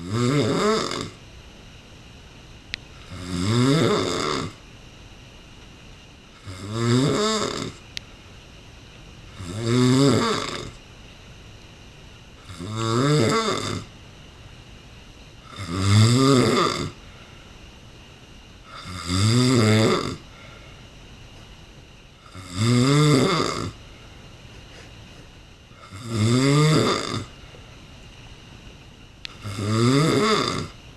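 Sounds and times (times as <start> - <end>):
man snoring loudly: 0.0 - 1.2, 3.0 - 4.6, 6.4 - 7.8, 9.3 - 10.8, 12.4 - 13.9, 15.4 - 17.0, 18.7 - 20.2, 22.2 - 23.8, 25.8 - 27.3, 29.3 - 30.8.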